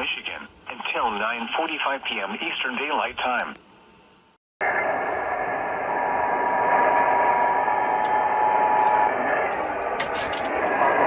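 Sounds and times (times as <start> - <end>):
radio static hiss: 0.0 - 3.8.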